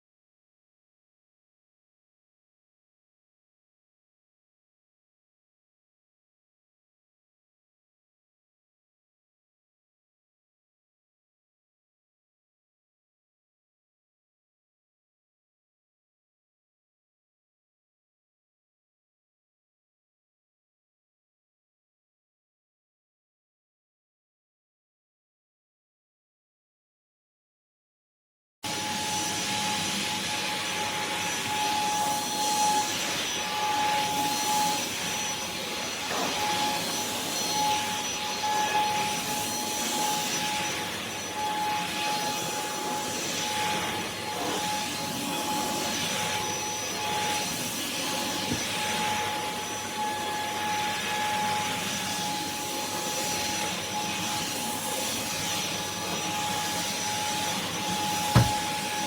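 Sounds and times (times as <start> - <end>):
vacuum cleaner running: 28.7 - 59.0
short knock: 58.3 - 58.7.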